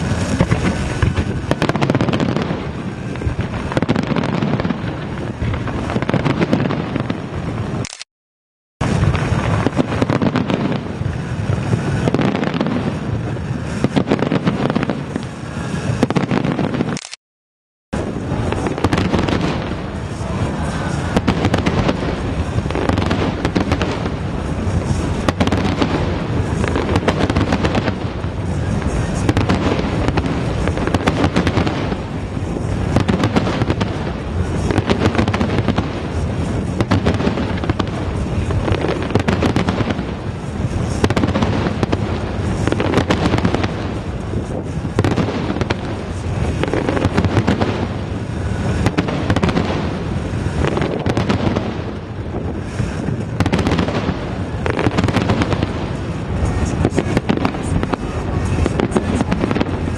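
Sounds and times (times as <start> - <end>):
firework shell bangs and crackling: 0.0 - 7.9, 8.8 - 17.2, 18.0 - 59.9.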